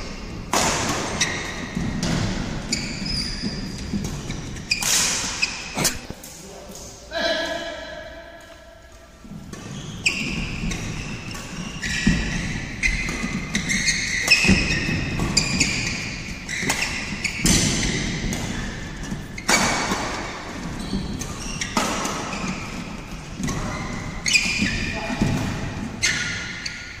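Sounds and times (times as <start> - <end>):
shoe squeaks on court floor: 1.0 - 1.9, 2.6 - 6.2, 9.5 - 19.9, 20.5 - 25.3, 26.0 - 27.0
footwork thuds: 1.5 - 6.2.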